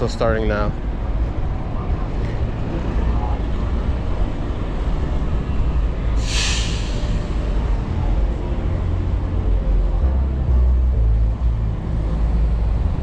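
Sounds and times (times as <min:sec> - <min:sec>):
city traffic: 0:00.0 - 0:13.0
short hiss: 0:06.2 - 0:07.3.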